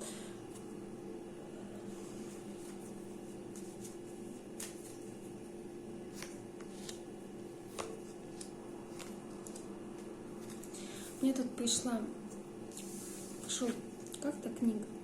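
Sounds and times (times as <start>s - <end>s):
steady low hum: 0.0s - 15.0s
cards being shuffled: 2.6s - 5.3s, 6.1s - 7.0s, 7.7s - 10.8s.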